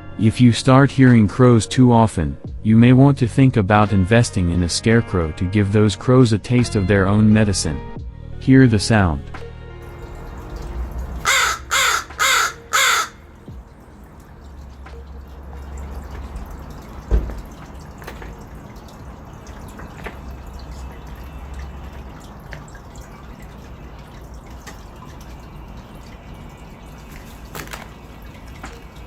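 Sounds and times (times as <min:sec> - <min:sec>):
water dripping: 0:09.8 - 0:29.0.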